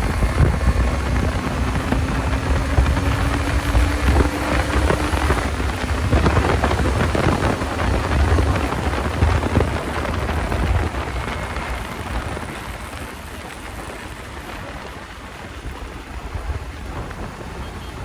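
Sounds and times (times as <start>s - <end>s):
motorcycle running: 0.0s - 18.0s
wind buffeting microphone: 0.0s - 18.0s.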